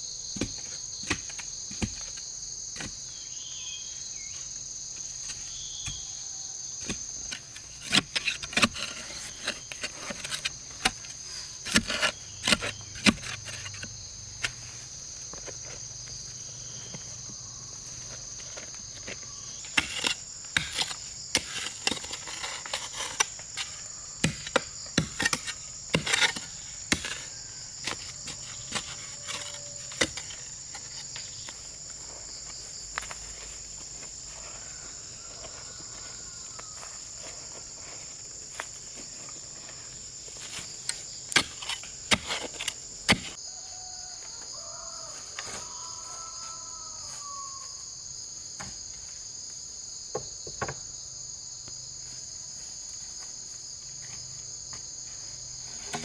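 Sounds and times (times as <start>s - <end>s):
insect chorus drone: 0.0s - 56.0s
knocks and taps on wood: 50.1s - 50.8s.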